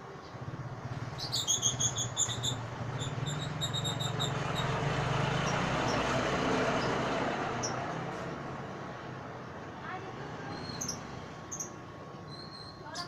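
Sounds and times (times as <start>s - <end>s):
lovebirds chirping shrilly: 1.0s - 6.0s, 10.5s - 13.0s.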